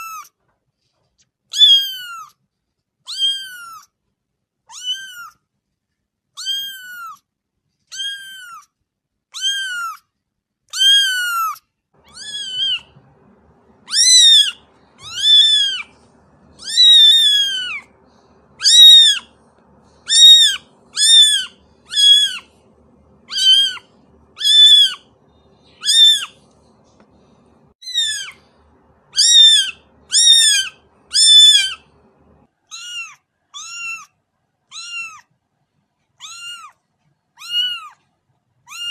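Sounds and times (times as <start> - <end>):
kitten meowing: 1.5 - 2.3, 3.1 - 3.9, 4.7 - 5.4, 6.4 - 7.2, 7.9 - 8.7, 9.3 - 10.0, 10.7 - 13.2, 13.8 - 16.0, 16.6 - 17.9, 18.6 - 19.3, 20.0 - 22.5, 23.3 - 25.1, 25.8 - 26.4, 27.8 - 28.4, 29.1 - 31.9, 32.7 - 34.1, 34.7 - 35.3, 36.2 - 36.8, 37.4 - 38.0, 38.7 - 38.9.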